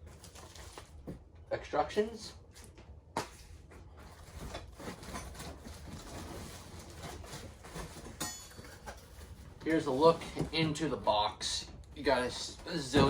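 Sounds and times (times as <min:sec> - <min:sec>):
packing crinkle: 0:00.0 - 0:01.0
cardboard box rustling: 0:03.3 - 0:11.1.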